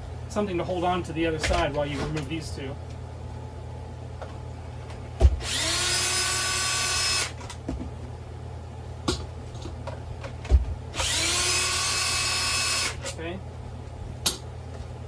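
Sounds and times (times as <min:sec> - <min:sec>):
power drill motor whine: 0:05.4 - 0:07.4, 0:10.9 - 0:13.1.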